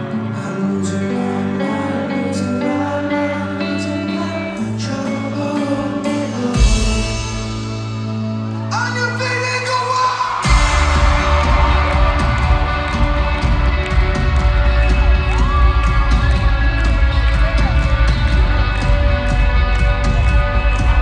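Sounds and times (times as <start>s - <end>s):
live rock band playing: 4.0s - 8.7s, 10.4s - 21.0s
crowd cheering and whooping: 8.4s - 21.0s.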